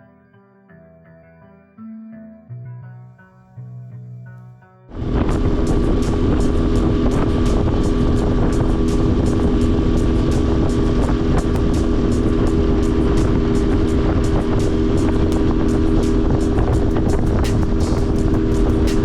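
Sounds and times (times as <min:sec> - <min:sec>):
outboard motor running: 0:04.9 - 0:19.0.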